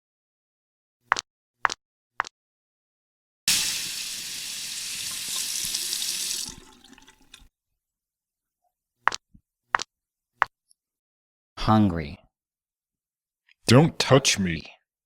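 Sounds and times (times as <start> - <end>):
tap water running into sink: 3.5 - 7.5.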